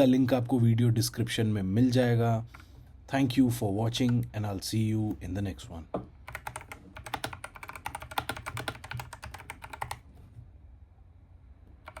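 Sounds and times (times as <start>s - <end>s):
fast typing on mechanical keyboard: 6.2s - 10.0s.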